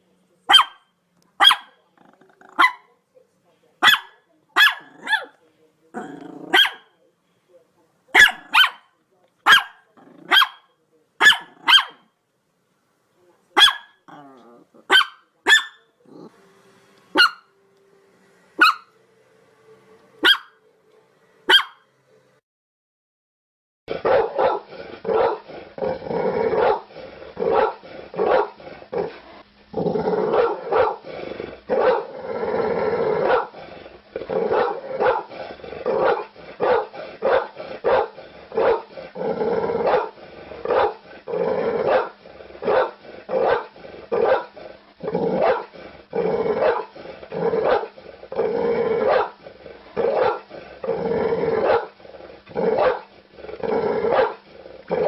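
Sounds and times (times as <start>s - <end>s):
dog barking: 0.5s - 1.8s, 2.5s - 2.9s, 3.8s - 5.4s, 6.5s - 6.9s, 8.1s - 12.1s, 13.6s - 14.0s, 14.8s - 15.9s, 17.1s - 17.5s, 18.6s - 18.9s, 20.2s - 20.6s, 21.5s - 21.8s, 24.0s - 25.4s, 26.6s - 26.9s, 27.5s - 28.6s, 30.4s - 31.0s, 31.8s - 32.1s, 33.2s - 33.6s, 34.5s - 35.3s, 36.0s - 38.9s, 39.8s - 41.0s, 41.8s - 44.5s, 45.4s - 45.7s, 46.6s - 46.9s, 47.6s - 47.9s, 49.0s - 49.4s, 50.1s - 50.5s, 51.6s - 51.9s, 52.8s - 53.1s, 54.1s - 54.4s.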